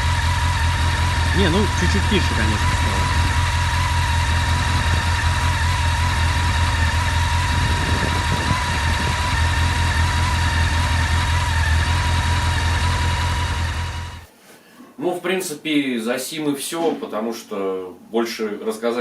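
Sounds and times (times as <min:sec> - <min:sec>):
motorcycle engine idling: 0:00.0 - 0:14.3.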